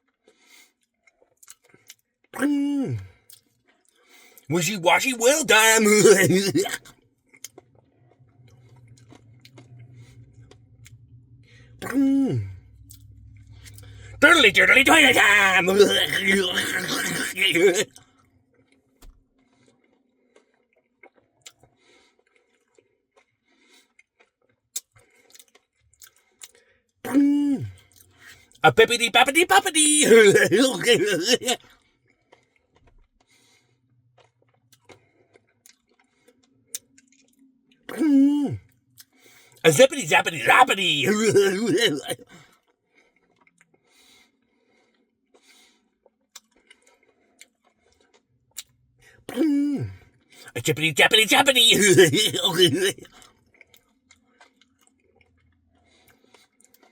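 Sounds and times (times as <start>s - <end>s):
person chewing: 24.0s - 26.5s.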